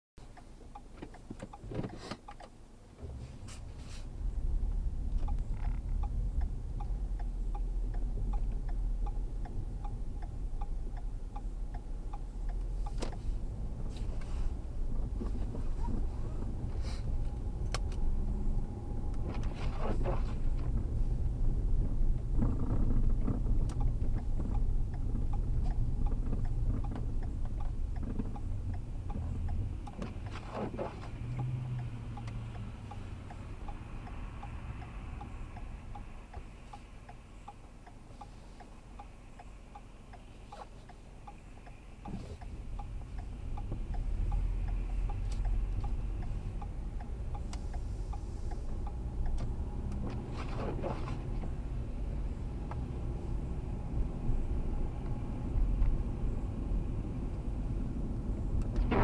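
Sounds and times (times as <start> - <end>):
road vehicle rumble: 0.2 - 59.0
sharp clicks and knocks: 0.3 - 3.7, 4.7 - 14.3, 19.1 - 33.0.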